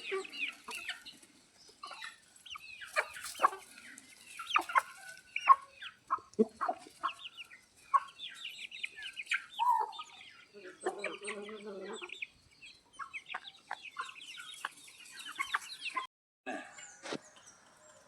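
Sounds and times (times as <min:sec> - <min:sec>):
chickens clucking and calling: 0:00.0 - 0:18.0.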